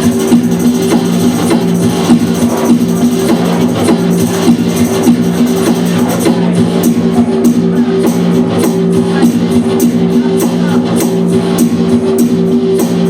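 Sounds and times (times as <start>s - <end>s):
live band music: 0.0s - 13.0s.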